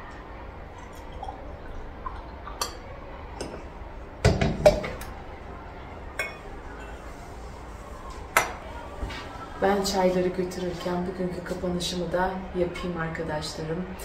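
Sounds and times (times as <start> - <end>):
tea glasses and dishes clinking: 6.2 - 7.0.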